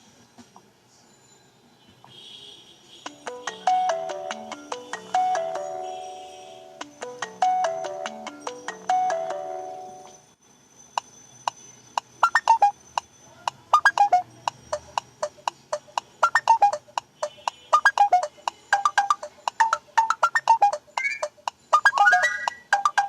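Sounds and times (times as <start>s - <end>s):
electronic phone ringtone: 3.1s - 10.4s, 12.2s - 12.8s, 13.5s - 16.9s, 17.7s - 23.0s.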